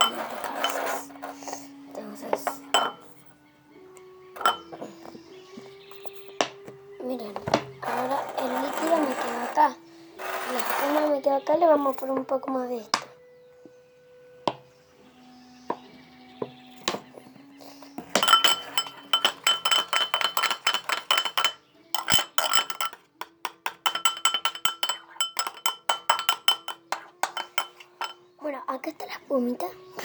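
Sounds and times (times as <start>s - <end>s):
spoon clinking against container: 0.0s - 1.5s, 2.4s - 3.2s, 4.4s - 6.6s, 17.9s - 28.4s.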